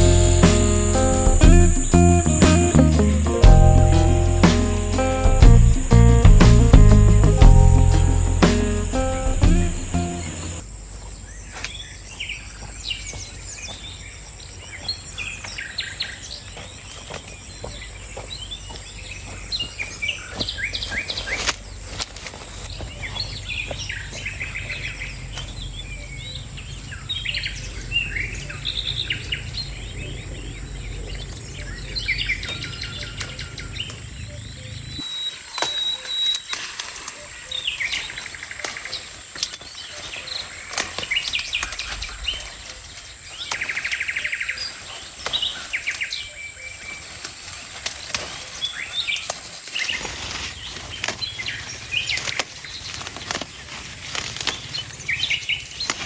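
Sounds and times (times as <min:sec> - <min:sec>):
steady high tone: 0:00.0 - 0:10.6
birds chirping: 0:00.0 - 0:21.8.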